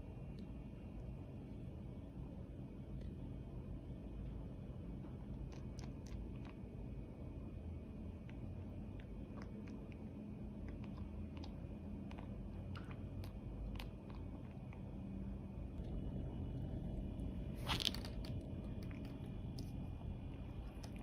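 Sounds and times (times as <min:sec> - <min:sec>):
dog chewing and crunching: 0:09.4 - 0:14.9, 0:17.6 - 0:21.0.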